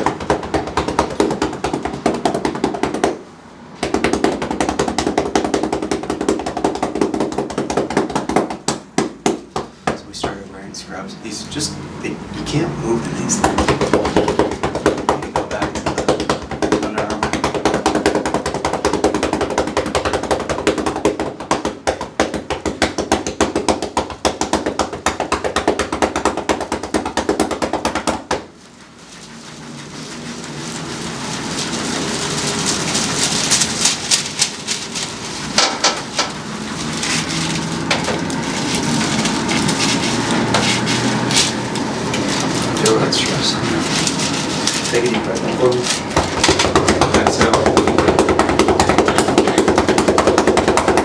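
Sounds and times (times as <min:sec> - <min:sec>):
scattered taps: 0:00.0 - 0:03.2, 0:03.8 - 0:10.4, 0:13.4 - 0:28.4, 0:42.1 - 0:51.0
massage gun pounding: 0:00.0 - 0:10.4, 0:12.4 - 0:51.0.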